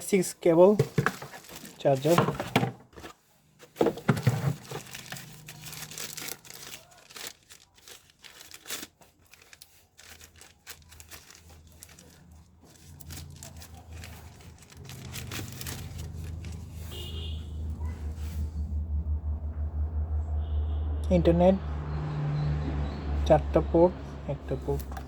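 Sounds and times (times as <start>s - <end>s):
plastic packaging crinkling: 0.6s - 17.2s
low hum: 17.5s - 23.1s.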